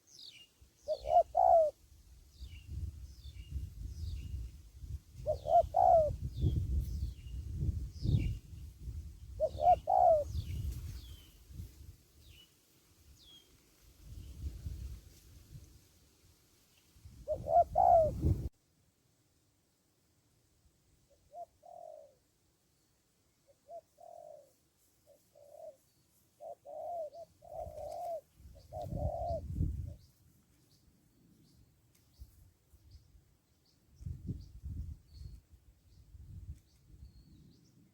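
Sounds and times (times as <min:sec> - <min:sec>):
small birds chirping: 0:00.0 - 0:04.6, 0:05.2 - 0:11.4, 0:23.6 - 0:37.9
dove cooing: 0:00.8 - 0:01.8, 0:05.2 - 0:06.7, 0:09.3 - 0:11.2, 0:17.2 - 0:18.5, 0:21.1 - 0:22.2, 0:23.5 - 0:25.8, 0:26.4 - 0:30.1.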